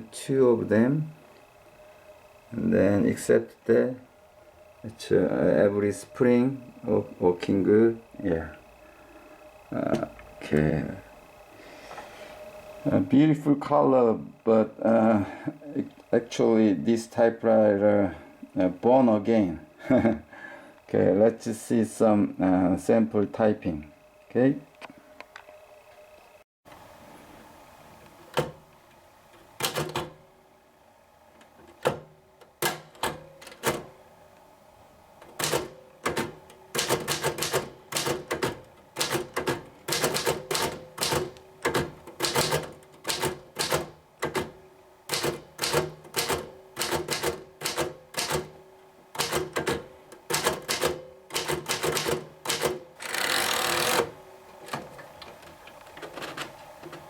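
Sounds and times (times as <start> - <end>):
manual typewriter typing: 29.6 - 30.2, 31.8 - 33.9, 35.2 - 48.5, 49.1 - 54.2.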